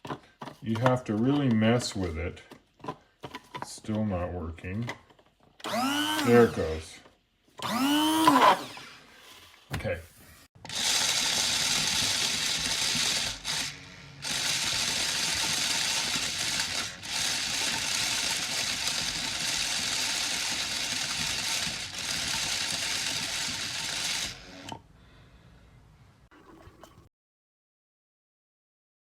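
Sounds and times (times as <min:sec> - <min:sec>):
coffee grinder motor running: 0:05.6 - 0:06.8, 0:07.6 - 0:09.4, 0:10.5 - 0:24.8.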